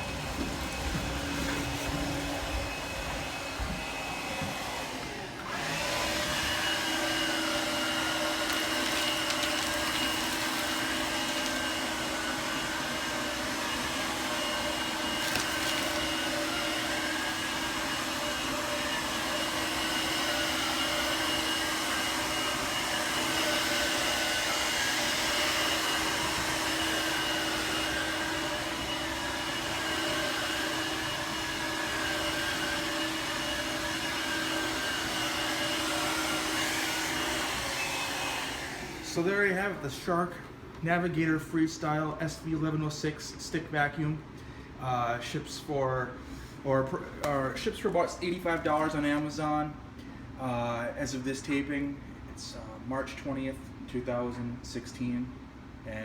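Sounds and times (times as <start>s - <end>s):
stick vacuum running on carpet: 0.0s - 39.3s.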